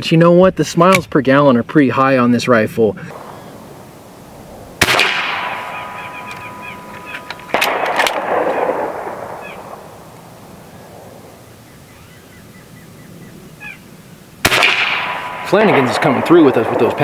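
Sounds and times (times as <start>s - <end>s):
steady ringing tone: 3.1s - 11.4s, 15.0s - 16.1s
air rifle shots echoing: 3.1s - 11.6s, 14.4s - 17.0s.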